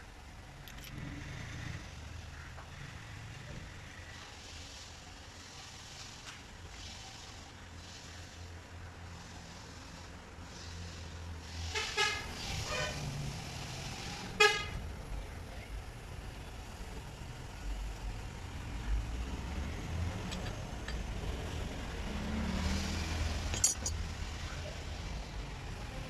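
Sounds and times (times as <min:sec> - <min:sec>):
low traffic rumble: 0:00.0 - 0:26.0
vehicle horn toots: 0:14.4 - 0:14.8.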